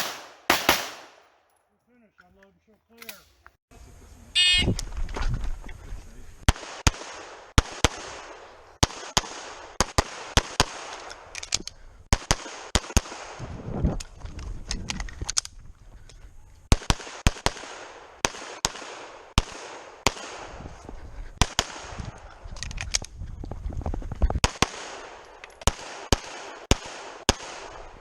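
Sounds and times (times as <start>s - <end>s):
rapid handgun fire: 0.0s - 1.4s, 6.5s - 11.1s, 12.1s - 13.5s, 16.7s - 20.6s, 21.4s - 22.1s, 24.4s - 28.0s.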